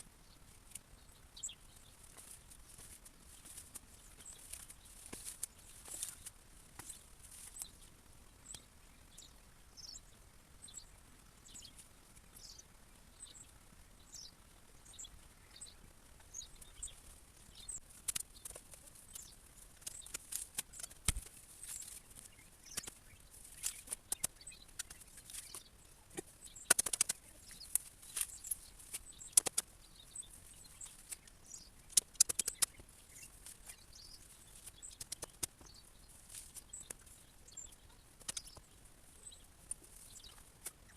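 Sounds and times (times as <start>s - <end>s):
small birds chirping: 0.0s - 40.9s
plant stems rustling and crackling: 1.6s - 7.9s, 16.6s - 40.9s.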